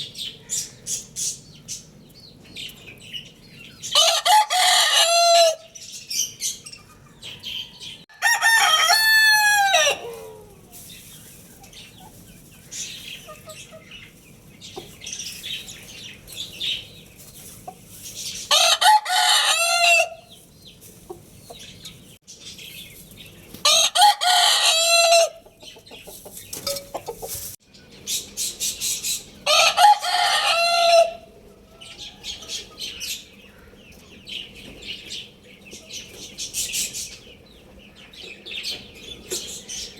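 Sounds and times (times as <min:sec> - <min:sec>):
chickens clucking: 0:00.4 - 0:08.0, 0:08.8 - 0:39.9
rooster crowing: 0:03.9 - 0:05.7, 0:08.1 - 0:10.6, 0:18.5 - 0:20.3, 0:23.6 - 0:25.4, 0:29.5 - 0:31.3.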